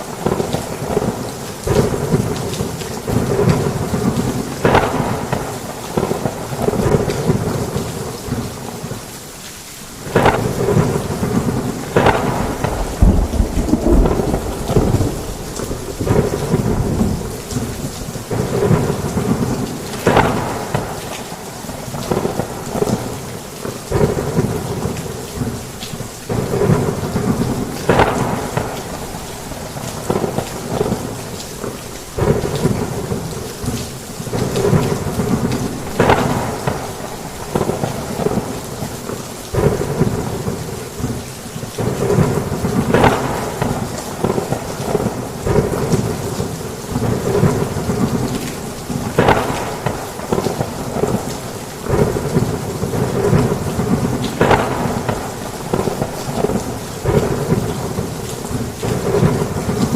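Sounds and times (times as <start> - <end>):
heavy rain pouring: 0.0 - 59.9
thunder rolling: 10.1 - 21.0, 26.3 - 31.2, 34.3 - 38.8, 46.9 - 59.9.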